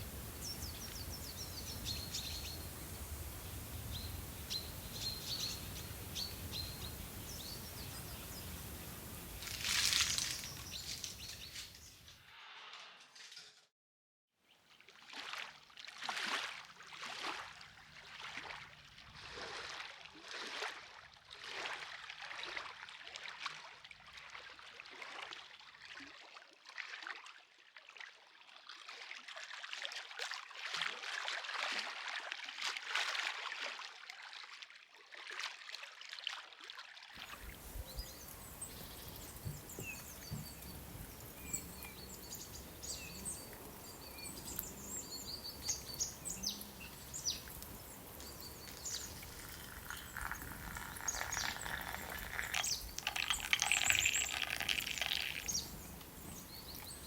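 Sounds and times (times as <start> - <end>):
small birds chirping: 0.0 - 12.1, 37.2 - 57.0
water sloshing in rhythmic strokes: 0.0 - 12.1, 14.6 - 57.0
outdoor ambience: 0.0 - 13.7, 37.2 - 57.0.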